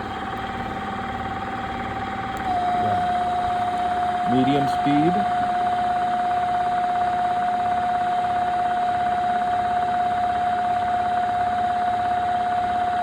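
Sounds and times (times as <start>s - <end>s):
motor whining: 0.0s - 6.0s.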